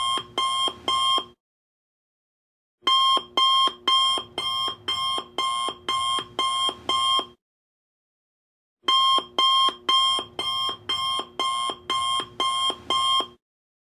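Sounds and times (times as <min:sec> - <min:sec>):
alarm clock beeping: 0:08.9 - 0:13.3.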